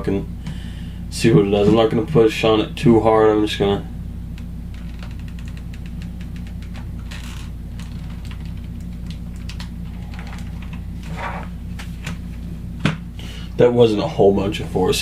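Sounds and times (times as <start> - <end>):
low hum: 0.0 - 15.0
plastic keyboard creaking and clicking: 4.7 - 11.4.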